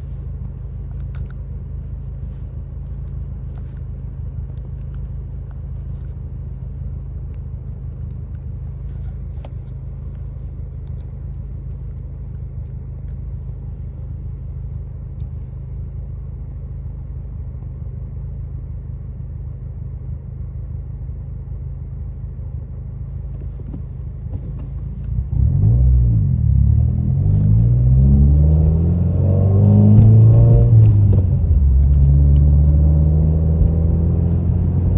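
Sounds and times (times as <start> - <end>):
car engine running and accelerating: 0.0 - 22.1, 22.7 - 34.9.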